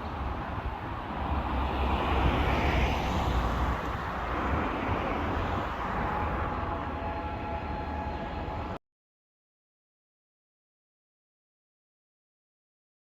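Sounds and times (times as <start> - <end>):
passing vehicle rumble: 0.0 - 8.8.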